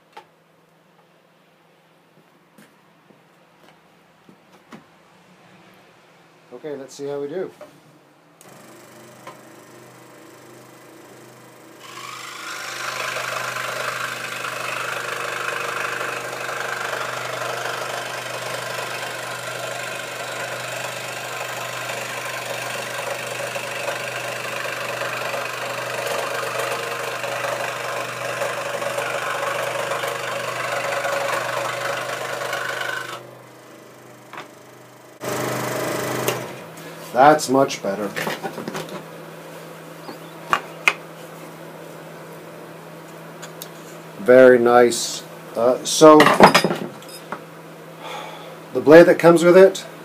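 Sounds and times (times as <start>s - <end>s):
scroll saw cutting wood: 8.4s - 37.3s.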